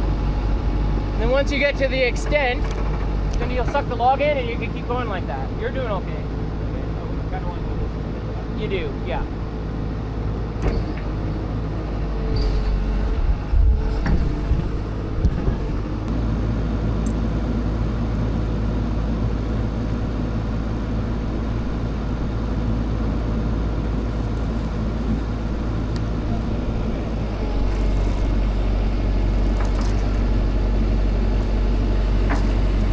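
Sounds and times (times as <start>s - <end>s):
excavator diesel engine running: 0.0s - 32.9s
metal knocks and clanks: 29.3s - 30.3s.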